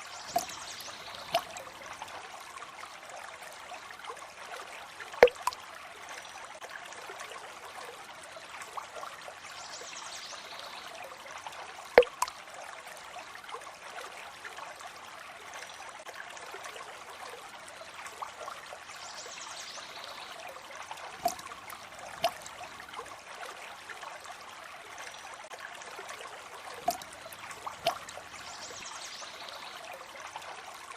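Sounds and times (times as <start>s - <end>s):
water trickling: 0.0s - 30.9s
water drops plinking: 0.1s - 2.0s, 5.2s - 5.6s, 12.0s - 12.4s, 21.2s - 23.1s, 26.8s - 29.0s.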